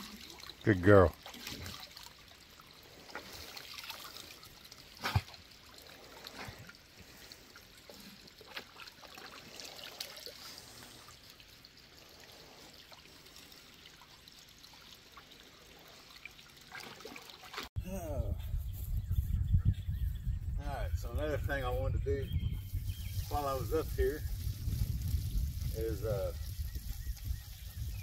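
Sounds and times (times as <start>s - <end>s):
faint trickling water: 0.0s - 17.7s.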